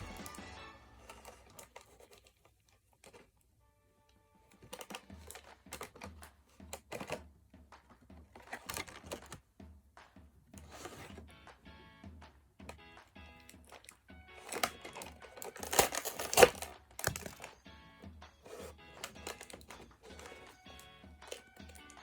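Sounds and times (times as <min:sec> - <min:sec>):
background music with pulsing beat: 0:00.0 - 0:01.4, 0:04.7 - 0:22.0
hands handling plastic packaging: 0:00.0 - 0:03.4, 0:04.5 - 0:07.2, 0:13.4 - 0:22.0.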